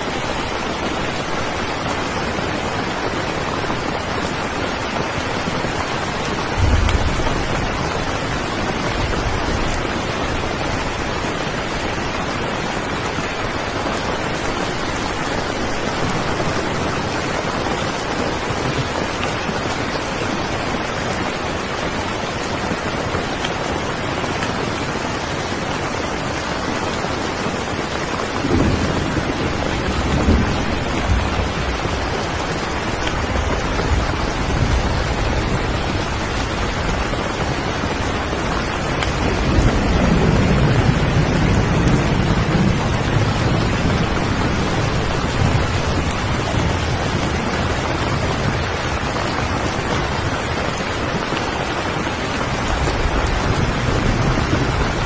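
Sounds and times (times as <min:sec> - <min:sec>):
thunder rumbling: 0:00.0 - 0:22.0, 0:27.0 - 0:55.0
steady rain falling: 0:00.0 - 0:55.0.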